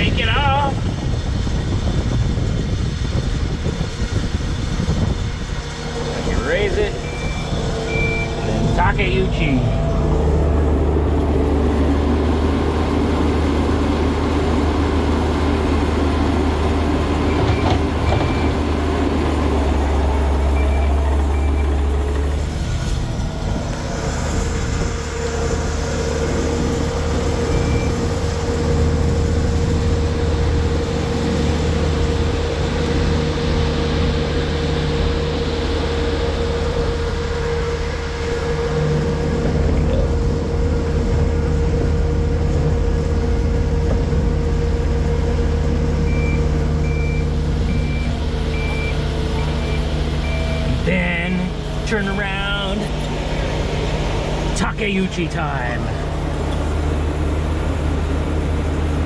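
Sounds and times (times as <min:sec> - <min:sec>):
diesel truck engine running: 0:00.0 - 0:59.0
short high beeps: 0:07.0 - 0:08.4.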